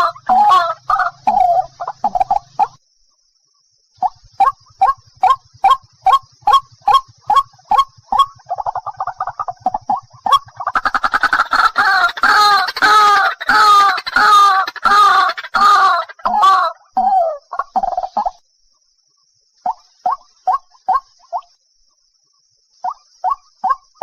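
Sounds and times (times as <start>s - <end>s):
loud harsh bird calls: 0.0s - 2.8s, 4.1s - 18.4s
bird fast chatter: 4.0s - 18.4s.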